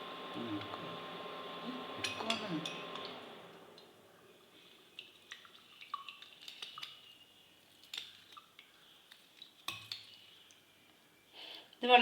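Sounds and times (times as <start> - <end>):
juice dripping into glass: 4.7 - 10.5.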